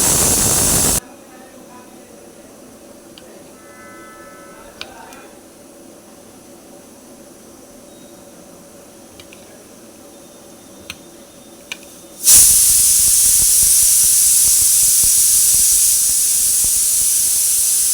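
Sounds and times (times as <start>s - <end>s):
hot oil sizzling in a pan: 0.0s - 1.0s, 12.2s - 17.9s.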